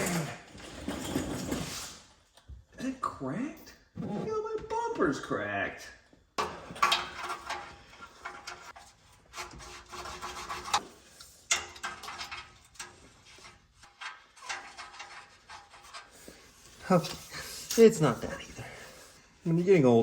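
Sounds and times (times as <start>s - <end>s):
rubbing and scraping: 0.0s - 2.2s, 6.4s - 20.0s.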